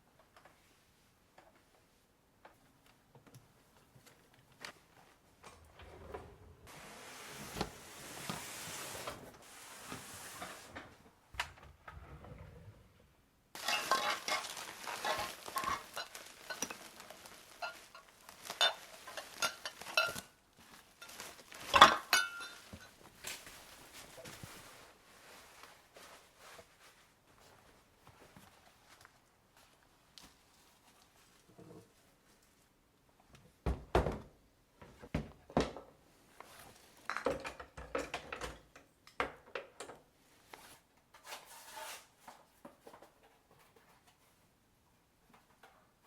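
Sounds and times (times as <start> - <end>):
dishes and utensils clattering: 13.6 - 20.3, 21.0 - 23.0.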